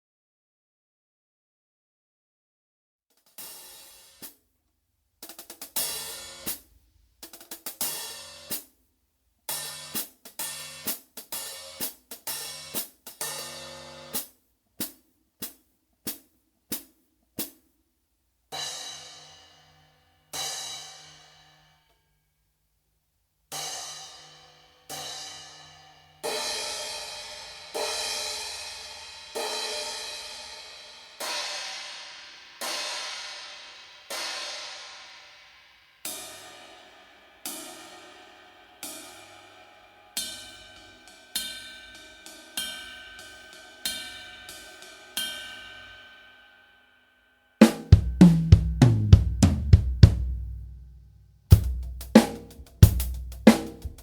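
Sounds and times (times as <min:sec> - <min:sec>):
drum kit groove: 0:03.2 - 0:04.4, 0:05.2 - 0:08.7, 0:09.5 - 0:17.6, 0:47.6 - 0:54.0
cymbal hits ringing: 0:36.1 - 0:47.2.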